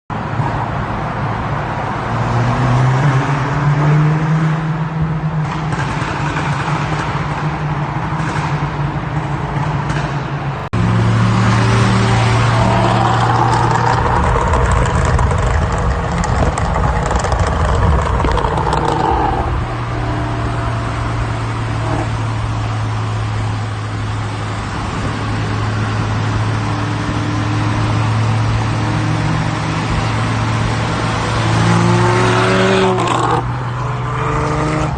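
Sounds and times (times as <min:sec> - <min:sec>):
car engine running: 0:10.6 - 0:26.4
exhaust crackling and popping: 0:12.2 - 0:24.6.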